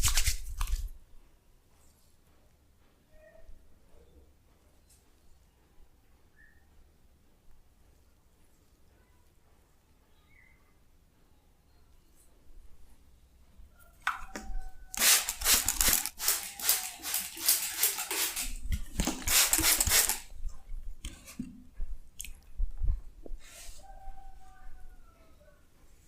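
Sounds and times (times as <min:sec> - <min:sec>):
hands rubbing skin and hair: 0:00.0 - 0:00.9, 0:14.3 - 0:20.6.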